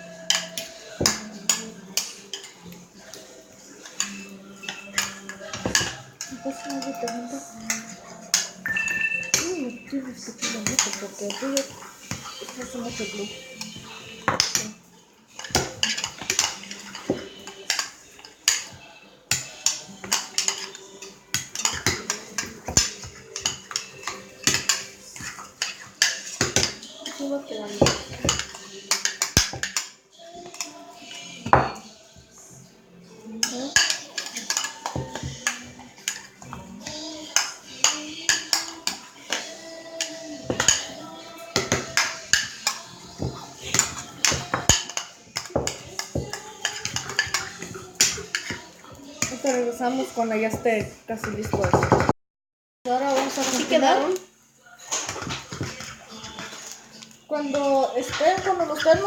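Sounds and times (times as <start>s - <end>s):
utensil clinking against bowl: 0.2s - 14.7s, 15.4s - 30.8s, 33.4s - 49.6s
utensil scraping a bowl: 33.7s - 49.7s.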